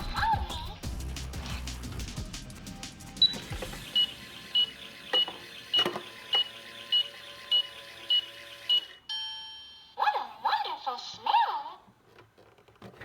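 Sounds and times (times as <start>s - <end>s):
short high toy beeps: 3.2s - 10.0s.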